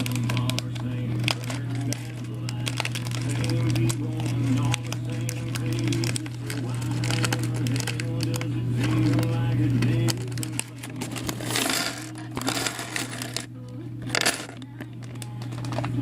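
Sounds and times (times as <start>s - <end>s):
steady low hum: 0.0s - 16.0s
plastic bricks clicking and clattering: 10.0s - 13.5s, 14.1s - 15.9s.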